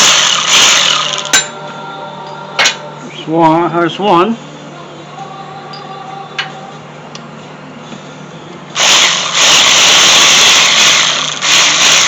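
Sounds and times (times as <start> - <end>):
power tool spinning out bolt: 0.0 - 1.4, 8.8 - 12.0.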